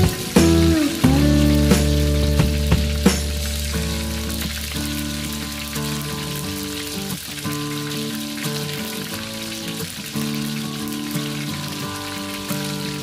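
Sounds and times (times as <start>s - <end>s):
background music of held notes: 0.0s - 3.7s
sizzling crackle: 0.0s - 13.0s.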